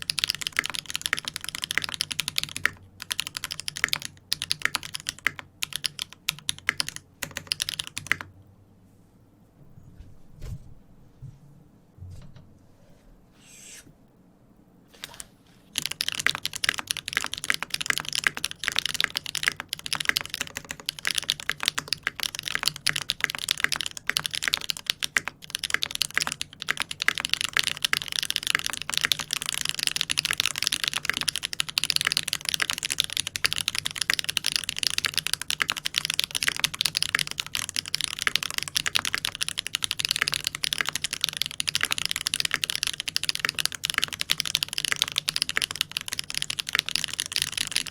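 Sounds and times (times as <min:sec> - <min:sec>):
fast typing on mechanical keyboard: 0:00.0 - 0:08.3, 0:15.8 - 0:47.9.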